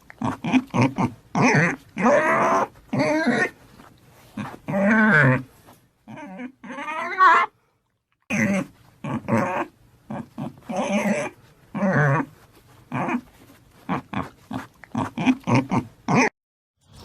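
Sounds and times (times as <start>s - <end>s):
dog barking and growling: 0.0s - 3.6s, 4.3s - 5.5s, 6.1s - 7.6s, 8.3s - 16.3s.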